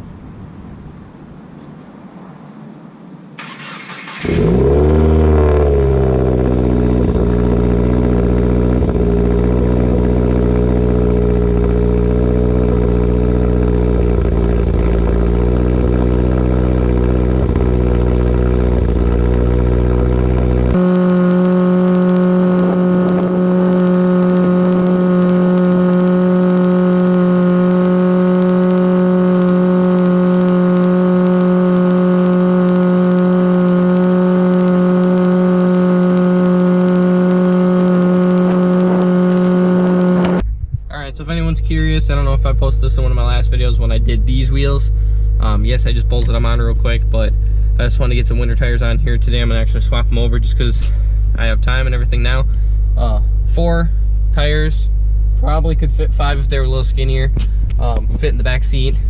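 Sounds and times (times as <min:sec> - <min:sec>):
engine starter cranking: 0:03.4 - 0:04.5
car engine idling: 0:20.8 - 0:40.4
droning hum: 0:20.8 - 0:40.4.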